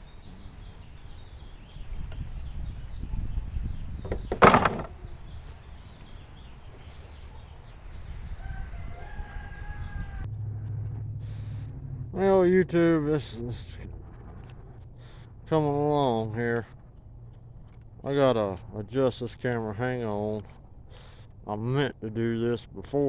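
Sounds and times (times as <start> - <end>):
rooster crowing faintly: 6.8 - 10.3.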